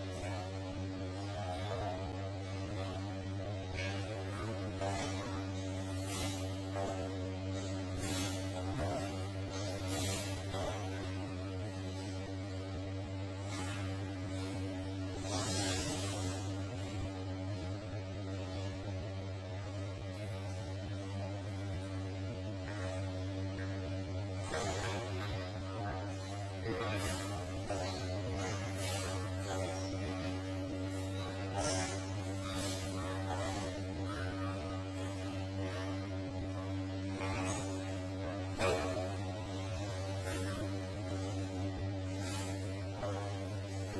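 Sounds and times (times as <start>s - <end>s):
low buzzy hum: 0.0s - 43.9s.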